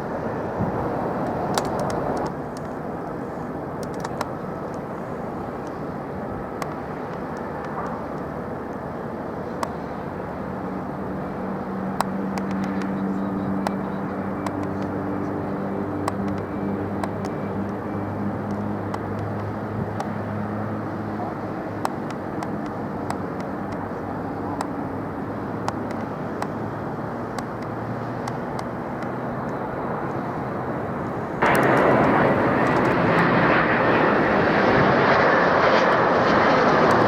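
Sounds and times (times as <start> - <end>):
jet aircraft and vehicles rumbling: 0.0 - 37.0
sharp clicks: 1.2 - 2.8, 3.8 - 4.8, 13.6 - 15.0, 15.8 - 17.8, 31.4 - 33.2.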